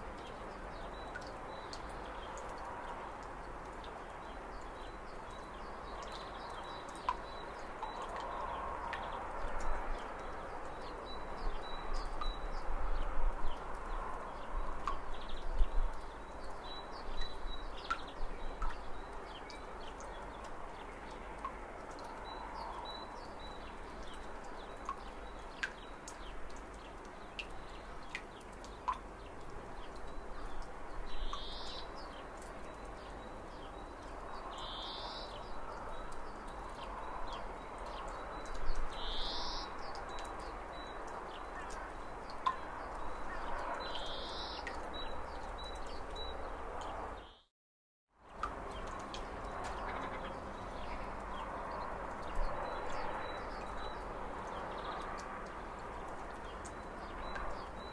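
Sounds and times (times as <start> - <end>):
light ticks: 0.1 - 10.9, 13.4 - 23.0, 23.6 - 34.7, 35.3 - 39.0, 39.9 - 46.9, 48.3 - 51.5.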